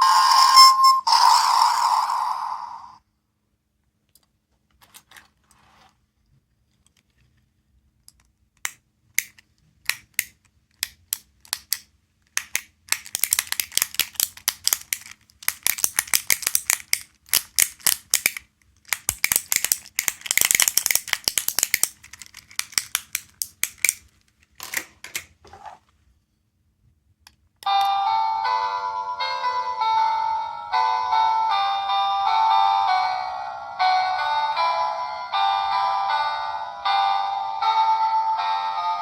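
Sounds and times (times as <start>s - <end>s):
plastic capsule toy clicking: 8.1s - 25.3s.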